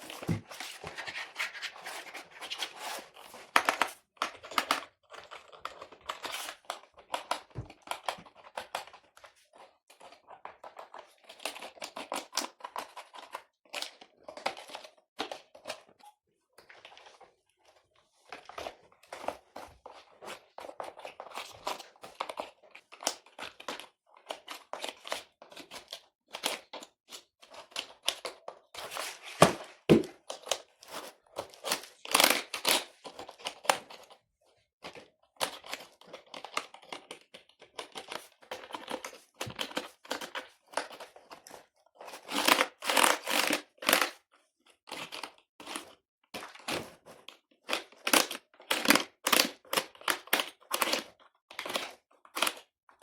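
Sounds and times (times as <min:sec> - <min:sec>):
rubbing and rustling: 0:00.0 - 0:03.6.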